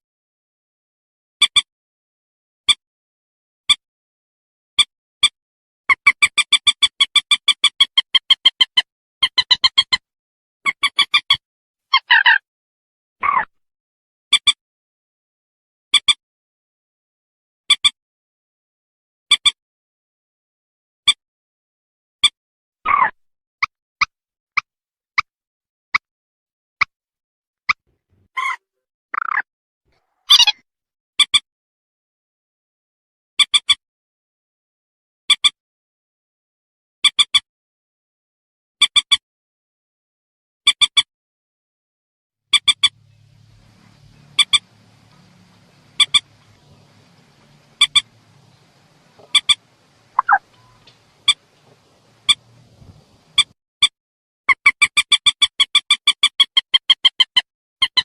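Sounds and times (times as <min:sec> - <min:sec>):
bird calling sharp notes: 0:42.5 - 0:53.5
faint low hum: 0:42.6 - 0:53.5.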